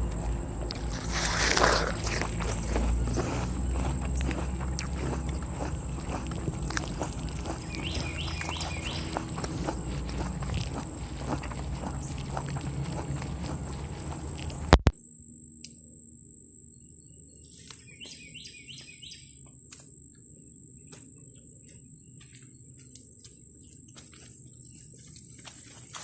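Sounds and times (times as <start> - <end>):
bird chirping: 0.0 - 14.7, 17.3 - 19.4
rustling: 0.0 - 14.8.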